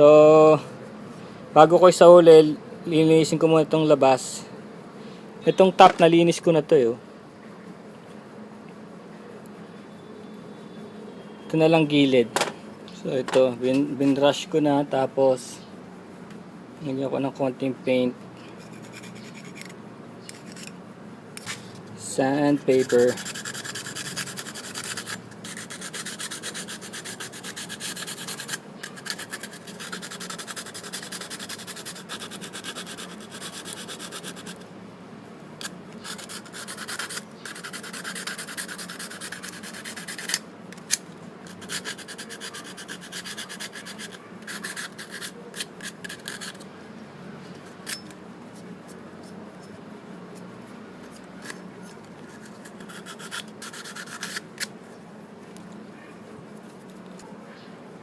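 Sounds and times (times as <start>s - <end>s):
sandpaper sanding metal: 18.6s - 19.7s, 21.4s - 34.6s, 36.0s - 46.6s, 51.1s - 54.7s
light scrapes: 47.4s - 54.7s.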